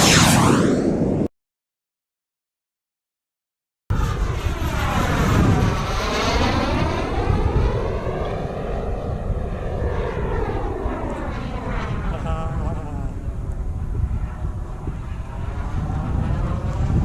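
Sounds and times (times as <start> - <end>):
jet turbine roaring past: 0.0 - 1.3, 3.9 - 17.0
wind rumbling on microphone: 3.9 - 17.0.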